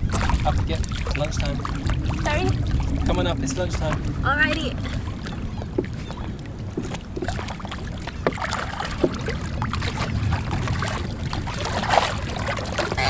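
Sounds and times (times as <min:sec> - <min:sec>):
steady low rumble: 0:00.0 - 0:06.7
water sloshing and splashing: 0:00.0 - 0:13.0.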